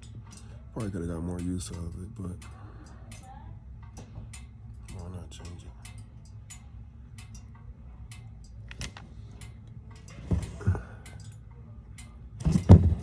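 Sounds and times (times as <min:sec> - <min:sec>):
hand tools clicking and tapping: 0:00.0 - 0:13.0
low steady hum: 0:00.0 - 0:13.0
loud clunk: 0:10.2 - 0:10.8, 0:12.4 - 0:13.0.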